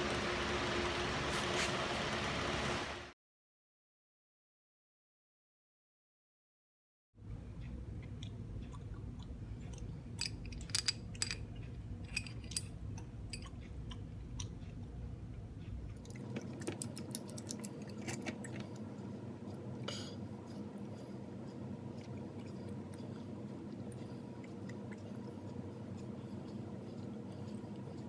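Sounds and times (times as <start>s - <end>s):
steady low hum: 7.2s - 28.0s.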